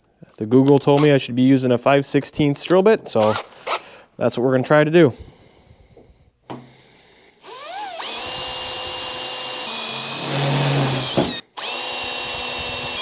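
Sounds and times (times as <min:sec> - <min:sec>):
electric drill drilling steel: 0:07.4 - 0:13.0.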